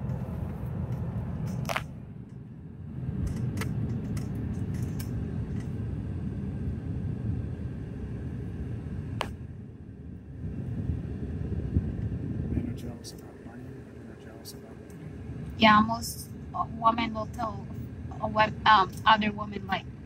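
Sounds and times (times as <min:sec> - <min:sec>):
car engine rumble: 0:00.0 - 0:20.0
road noise: 0:00.0 - 0:20.0.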